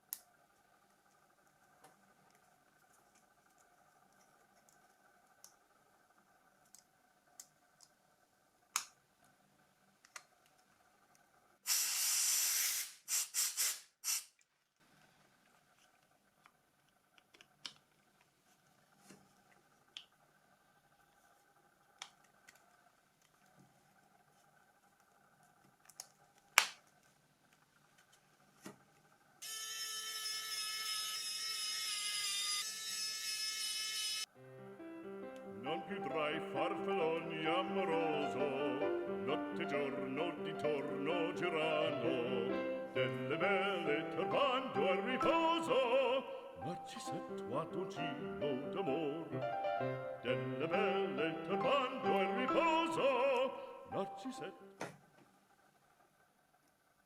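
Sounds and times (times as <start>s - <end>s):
loud hiss: 11.6s - 14.3s
music with held notes: 34.4s - 45.8s, 46.8s - 53.2s.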